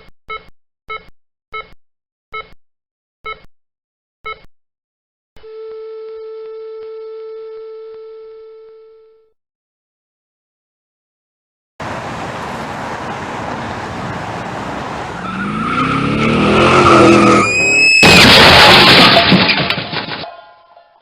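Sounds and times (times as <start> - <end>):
car engine: 11.8 - 19.0
tyres screeching: 12.0 - 19.6
loud car crash: 14.8 - 20.4.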